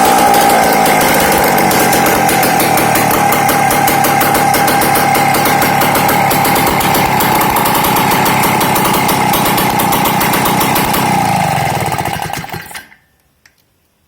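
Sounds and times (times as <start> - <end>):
small petrol engine running: 0.0 - 13.0.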